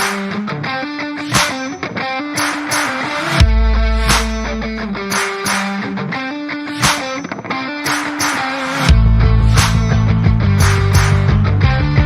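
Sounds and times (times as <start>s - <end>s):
cymbals: 2.4s - 5.9s, 6.7s - 11.3s
heavy drums and bass: 3.4s - 4.7s, 8.9s - 12.0s.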